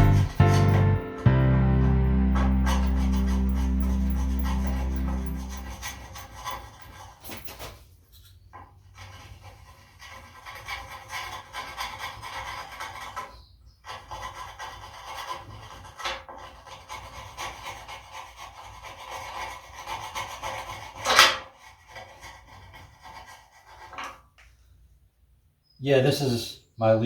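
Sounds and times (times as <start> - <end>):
hand scraping a surface: 0.0 - 7.2.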